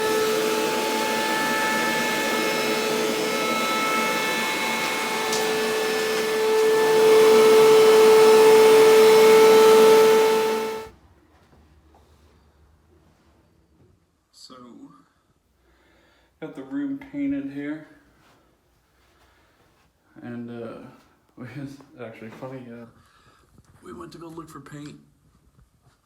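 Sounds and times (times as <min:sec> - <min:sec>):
vacuum cleaner whining: 0:00.0 - 0:10.9.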